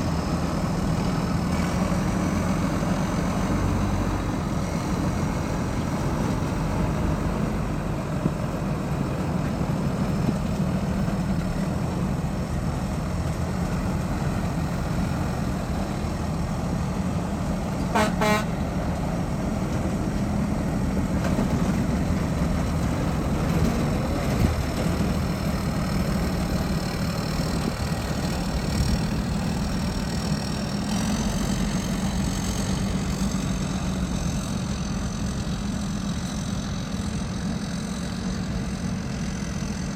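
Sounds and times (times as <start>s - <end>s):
combine harvester engines running: 0.0s - 39.9s
horn short toots: 17.9s - 18.6s.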